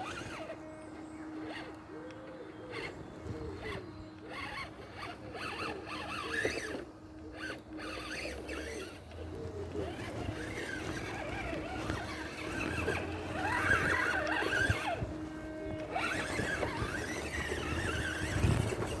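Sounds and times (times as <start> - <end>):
electric motor whining: 0.0 - 19.0.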